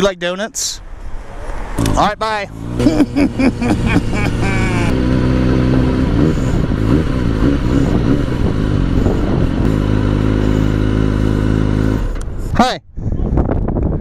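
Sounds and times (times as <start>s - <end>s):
motorcycle engine running: 1.8s - 12.6s.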